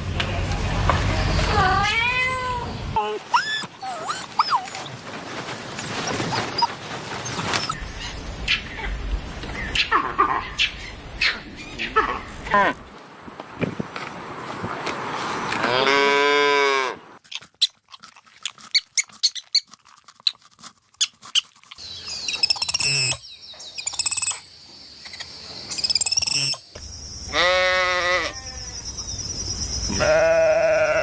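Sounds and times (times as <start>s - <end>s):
high-pitched chirping calls: 7.3s - 12.6s, 21.8s - 24.4s
sheep bleating: 27.3s - 28.6s, 29.9s - 31.0s.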